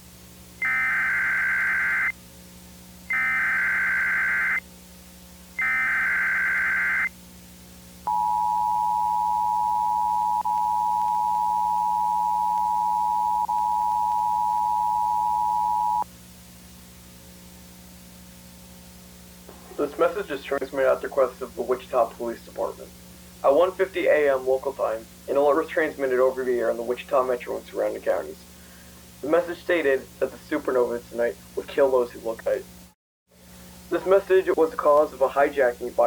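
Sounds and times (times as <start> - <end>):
buzzing digital header bursts: 0.6 - 2.1, 3.1 - 4.6, 5.6 - 7.1
two-tone attention signal: 0.6 - 2.1, 3.1 - 4.6, 5.6 - 7.1, 8.1 - 16.0.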